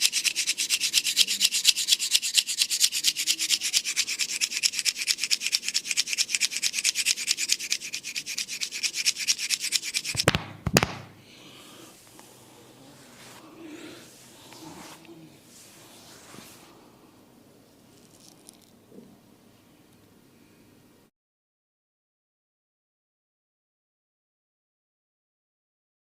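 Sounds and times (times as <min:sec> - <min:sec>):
hands rubbing skin briskly: 0:00.0 - 0:11.1, 0:14.0 - 0:16.7
sharp hand smacks: 0:10.2 - 0:11.2.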